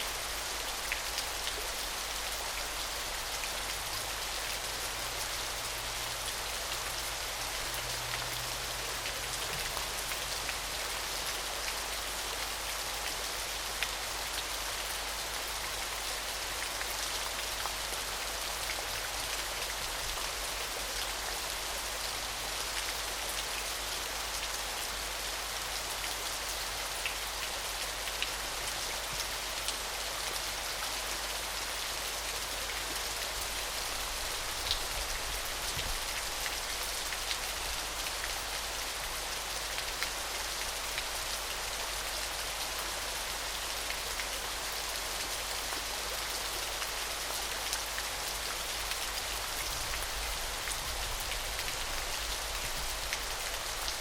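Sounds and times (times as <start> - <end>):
small waterfall splashing: 0.0 - 54.0.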